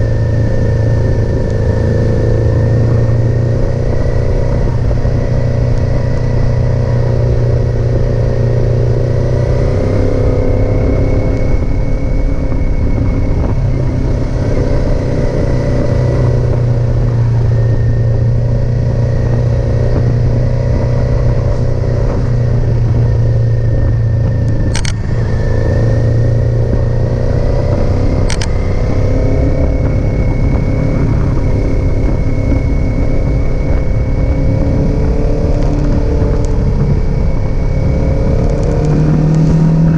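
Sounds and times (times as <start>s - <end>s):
motorcycle engine running: 0.0s - 39.9s
sharp clicks: 24.5s - 25.0s, 28.2s - 28.6s.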